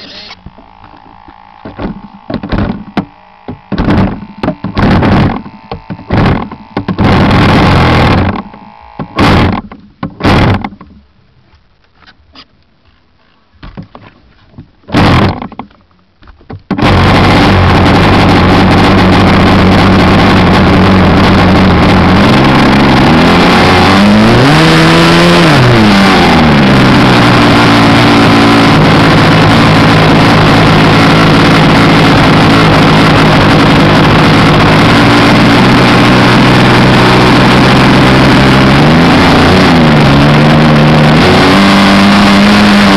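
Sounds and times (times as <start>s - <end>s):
model airplane engine running: 0.0s - 10.8s, 16.7s - 42.9s.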